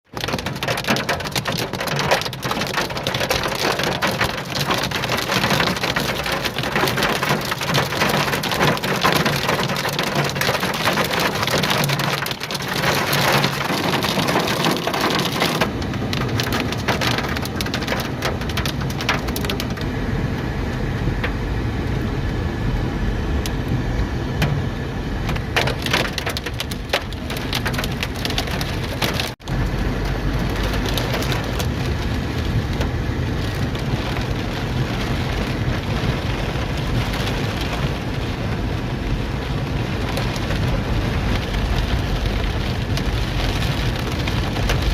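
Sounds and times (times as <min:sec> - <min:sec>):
heavy rain and hail: 0:00.1 - 0:21.4, 0:24.4 - 0:44.9.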